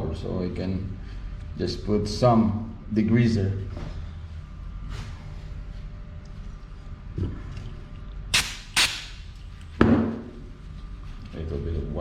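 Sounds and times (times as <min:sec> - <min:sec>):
spray can spraying: 0:08.4 - 0:09.3.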